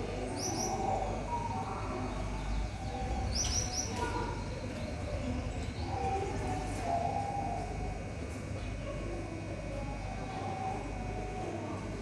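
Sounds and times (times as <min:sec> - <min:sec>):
steady background hum: 0:00.0 - 0:12.0
small birds chirping: 0:00.2 - 0:07.7.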